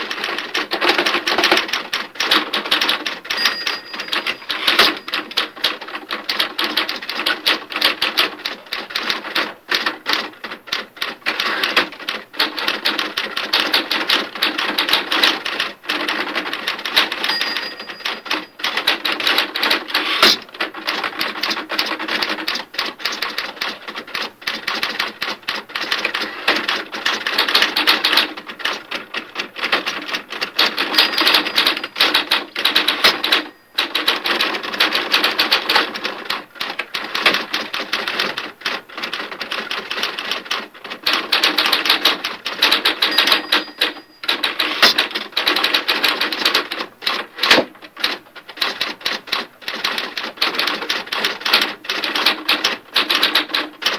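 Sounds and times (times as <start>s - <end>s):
printer chattering: 30.4s - 35.7s, 41.6s - 45.5s.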